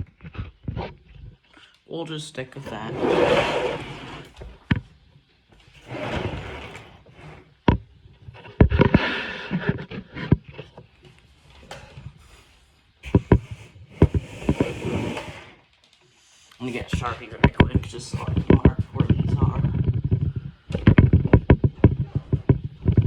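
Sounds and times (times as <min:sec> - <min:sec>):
scraping and rustling: 0:02.6 - 0:04.7, 0:05.6 - 0:07.6
sharp knocks and clicks: 0:16.9 - 0:23.0.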